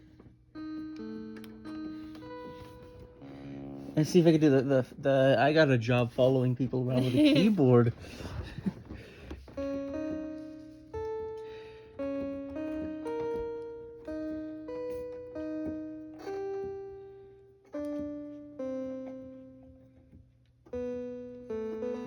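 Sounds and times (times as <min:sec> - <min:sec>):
electronic keyboard slow melody: 0:00.0 - 0:05.1, 0:06.9 - 0:22.0.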